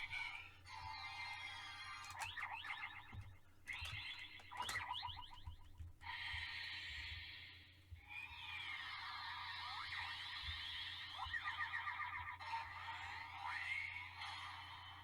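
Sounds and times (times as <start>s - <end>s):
toy belt electronic sound effects: 0.0s - 6.6s.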